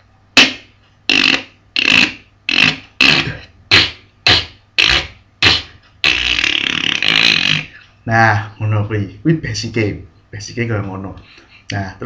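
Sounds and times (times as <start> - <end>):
beatbox mouth pulses: 0.4 - 8.0.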